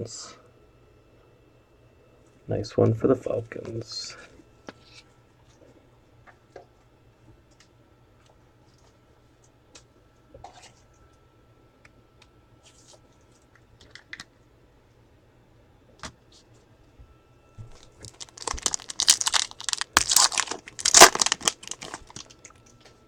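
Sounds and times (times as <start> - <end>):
trading cards being flipped: 18.0 - 22.3.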